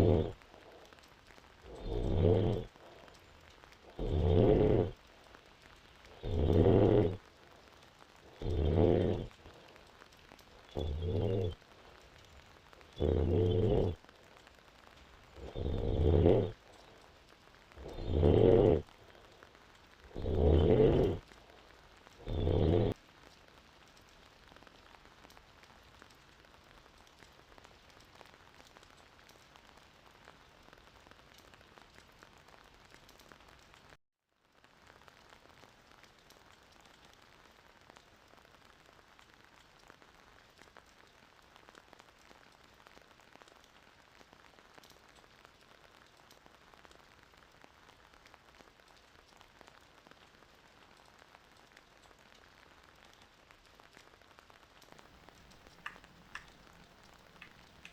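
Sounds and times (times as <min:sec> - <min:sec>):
woman snoring: 0:00.0 - 0:00.3, 0:01.8 - 0:02.6, 0:10.8 - 0:11.5, 0:22.2 - 0:23.0
faint steady hiss: 0:00.0 - 0:57.9.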